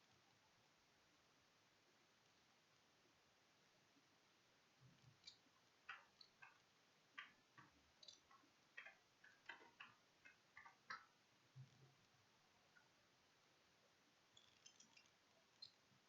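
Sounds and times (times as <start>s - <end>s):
computer keys and mouse clicking: 7.2s - 11.2s, 14.3s - 15.8s.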